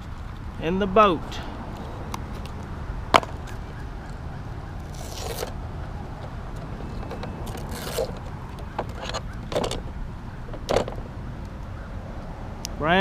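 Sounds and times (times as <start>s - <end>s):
scraping and rustling handling: 4.8s - 5.6s, 6.9s - 9.9s.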